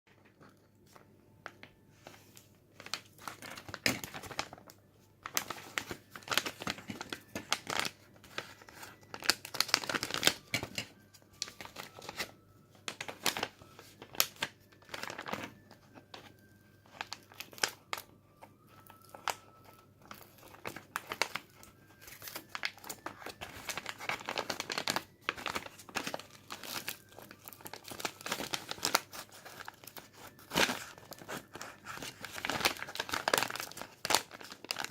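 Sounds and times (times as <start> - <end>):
packaging crinkling: 0.2 - 34.9
packaging tearing: 5.2 - 16.2, 18.8 - 34.9.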